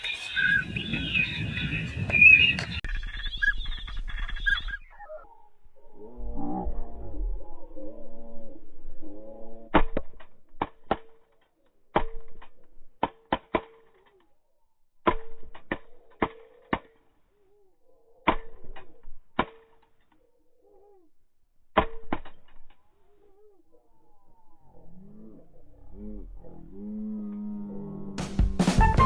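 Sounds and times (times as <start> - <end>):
faint low warbling calls: 0.0 - 9.7, 23.2 - 28.2.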